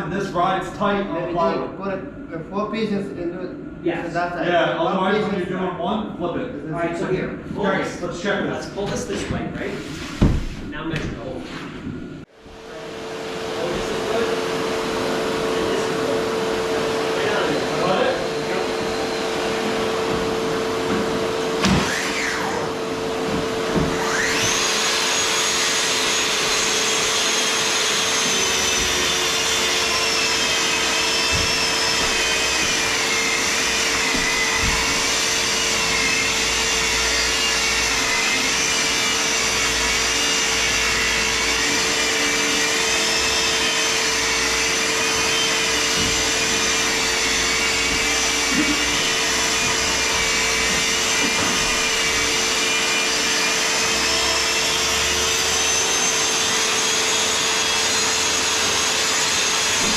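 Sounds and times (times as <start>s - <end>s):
steady hum: 0.0s - 55.5s
track saw cutting plywood: 12.6s - 59.9s.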